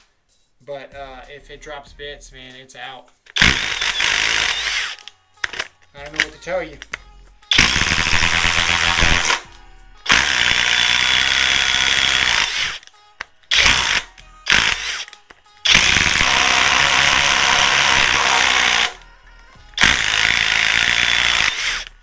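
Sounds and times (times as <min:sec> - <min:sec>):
impact driver hammering: 0:03.3 - 0:06.4, 0:07.5 - 0:19.0, 0:19.8 - 0:22.0.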